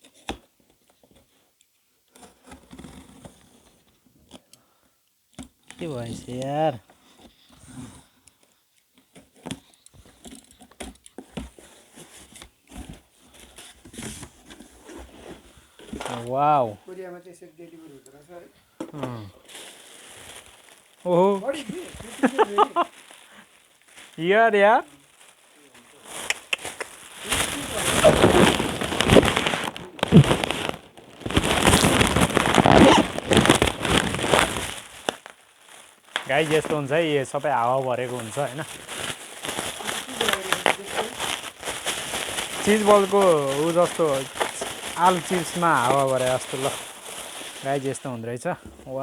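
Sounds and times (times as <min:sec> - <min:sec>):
cardboard and plastic crinkling: 0:09.1 - 0:16.8, 0:18.8 - 0:49.0.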